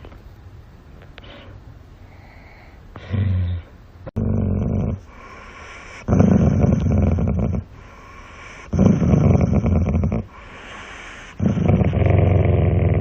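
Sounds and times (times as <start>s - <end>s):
dog growling: 3.0s - 7.8s, 8.5s - 13.0s.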